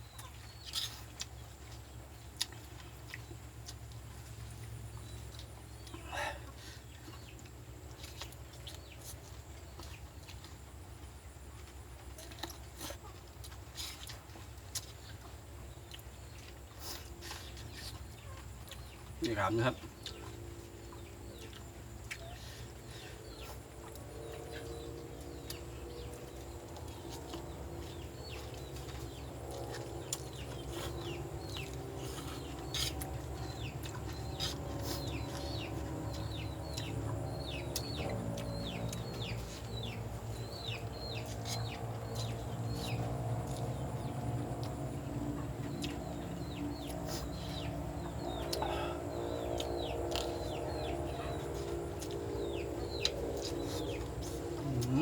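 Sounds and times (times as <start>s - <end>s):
chickens clucking: 11.6s - 55.0s.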